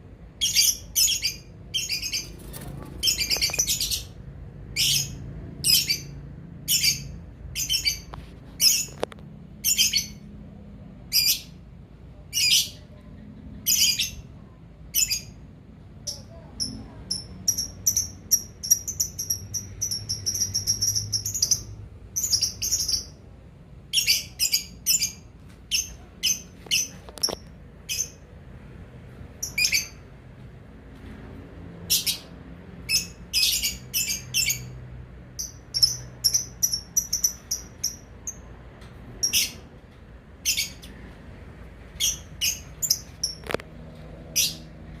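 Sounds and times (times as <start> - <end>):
lovebirds chirping: 0.4 - 9.0, 16.1 - 23.2, 23.9 - 28.2, 32.9 - 34.8, 35.4 - 38.5, 40.4 - 41.0, 42.0 - 43.5.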